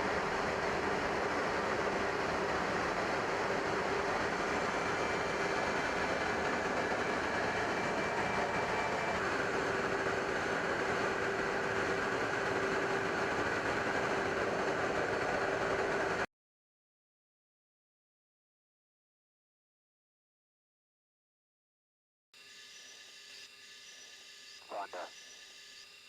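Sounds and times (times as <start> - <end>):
engine noise with whining tones: 0.0 - 16.3.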